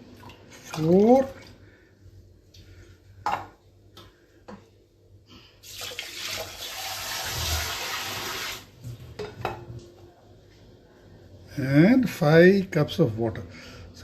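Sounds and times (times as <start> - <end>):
water pouring into a pot: 5.6 - 8.7.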